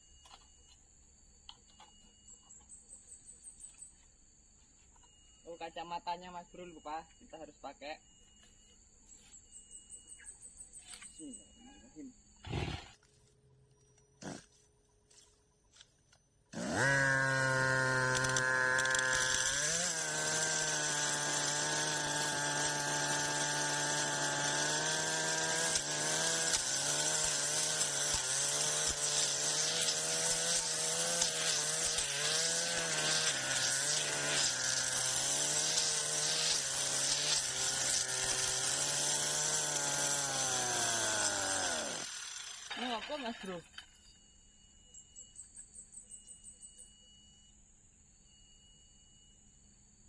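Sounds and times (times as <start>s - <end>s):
brush cutter engine revving: 14.2s - 14.5s, 16.5s - 43.8s.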